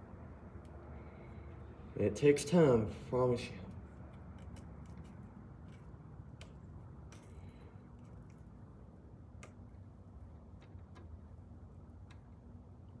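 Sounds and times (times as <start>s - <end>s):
low steady hum: 0.0s - 13.0s
clicks and taps from wires: 4.1s - 8.5s, 9.3s - 12.5s.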